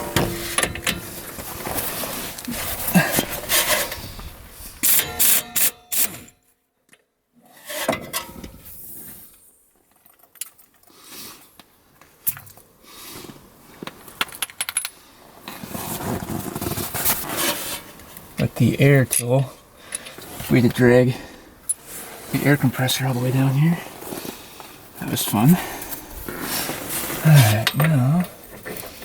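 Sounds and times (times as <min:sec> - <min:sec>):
metal tools clinking and rattling: 0:00.0 - 0:01.2, 0:04.8 - 0:06.3, 0:19.0 - 0:20.4, 0:27.4 - 0:29.0.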